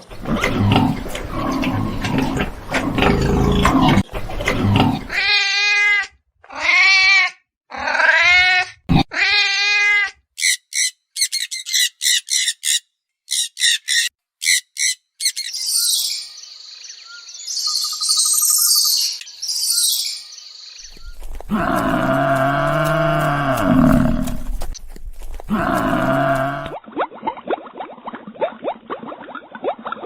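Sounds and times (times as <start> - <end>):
high warbling bird calls: 10.4 - 21.3
long low animal call: 21.2 - 24.8, 25.4 - 26.8.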